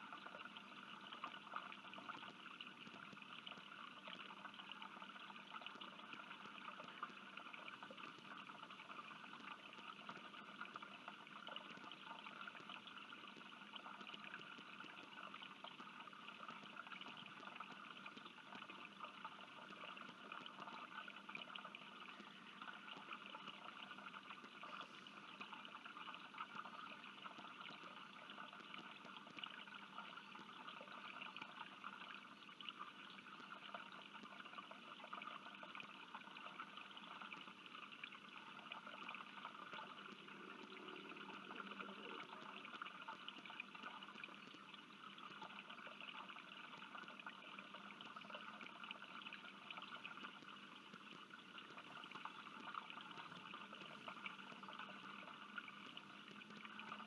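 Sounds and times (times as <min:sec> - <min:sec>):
trickle of running water: 0:00.0 - 0:57.0.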